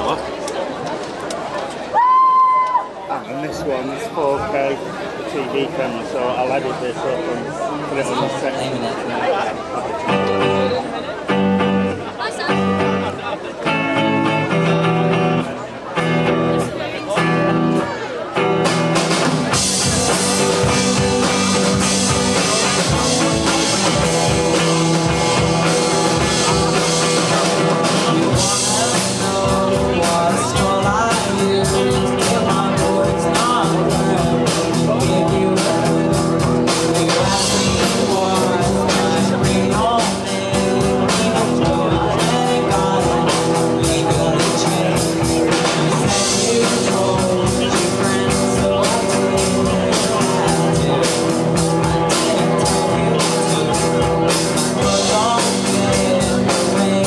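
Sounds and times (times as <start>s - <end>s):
guitar chords: 10.1s - 57.0s
steady drum beat: 16.0s - 57.0s.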